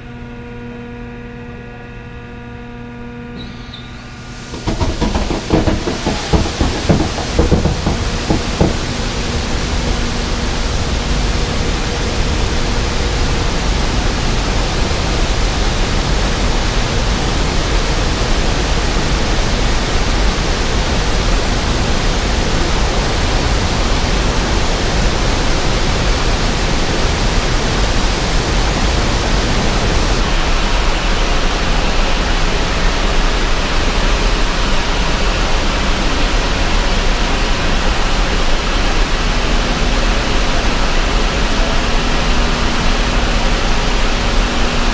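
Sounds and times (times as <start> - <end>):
water rushing from dam: 4.3 - 44.9.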